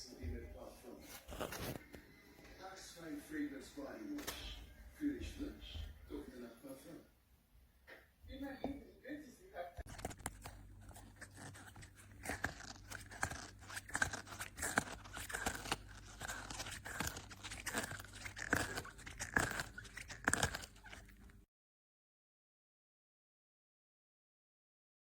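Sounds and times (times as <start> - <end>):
dog chewing a rubber ball: 9.8 - 21.4.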